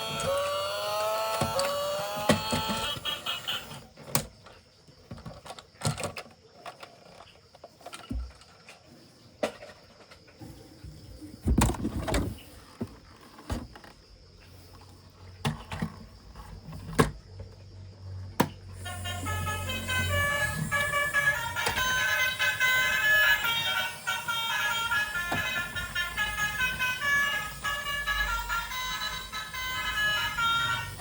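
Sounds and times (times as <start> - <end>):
plastic toys clicking and knocking: 1.3 - 8.8.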